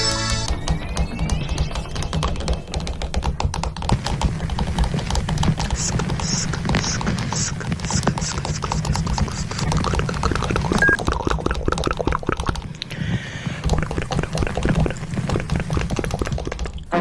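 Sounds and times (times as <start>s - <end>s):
cartoon liquid bubbling: 5.5s - 17.0s.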